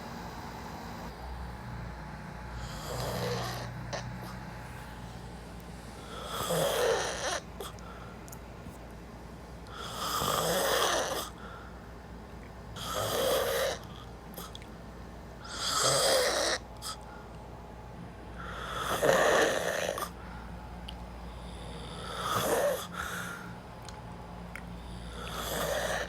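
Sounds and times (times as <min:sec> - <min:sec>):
person snoring: 0:02.6 - 0:04.4, 0:06.0 - 0:07.8, 0:09.7 - 0:11.4, 0:12.8 - 0:14.5, 0:15.4 - 0:17.0, 0:18.4 - 0:20.2, 0:21.4 - 0:23.5, 0:24.8 - 0:26.0.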